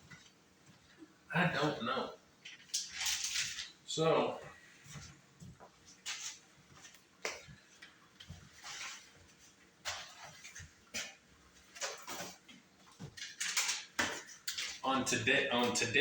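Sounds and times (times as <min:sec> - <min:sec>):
kitchen items clicking and knocking: 0:13.0 - 0:14.8.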